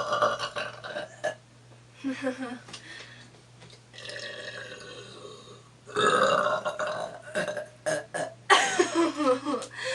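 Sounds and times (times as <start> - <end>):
woman burping: 4.0 - 8.6.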